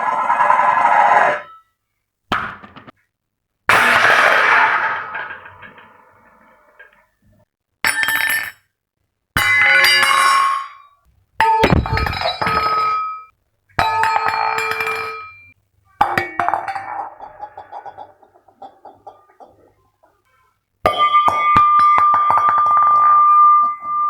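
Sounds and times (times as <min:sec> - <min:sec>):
kitchen utensils clattering: 0:16.2 - 0:20.2.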